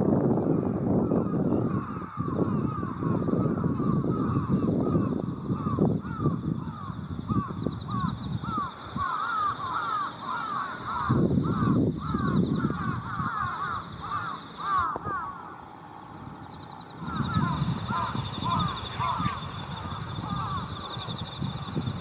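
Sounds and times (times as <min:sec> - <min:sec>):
crows cawing: 0:01.1 - 0:21.8.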